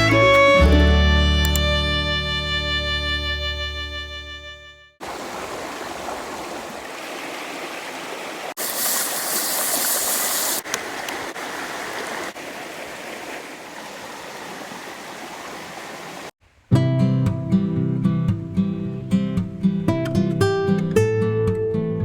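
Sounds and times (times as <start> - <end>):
music: 0.0 - 5.0, 16.7 - 22.0
creek water rushing: 5.0 - 16.4.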